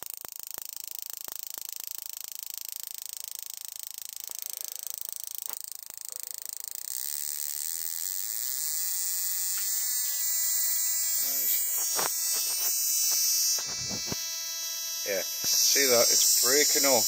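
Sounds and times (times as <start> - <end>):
ticking sparks: 0.0 - 14.3, 15.0 - 17.0
electric buzz: 4.3 - 17.0.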